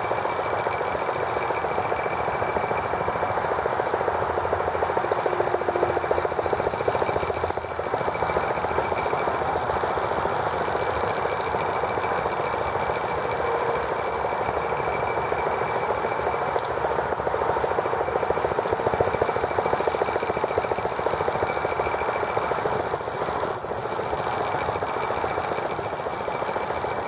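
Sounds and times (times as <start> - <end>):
small model engine running fast: 0.0 - 27.0.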